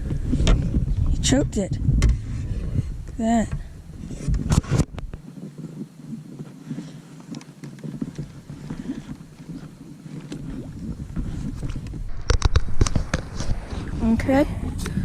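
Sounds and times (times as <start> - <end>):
wind on microphone: 0.0 - 6.9, 7.8 - 15.0
knocking and rustling on a kayak: 0.0 - 14.0
water noise: 8.5 - 15.0.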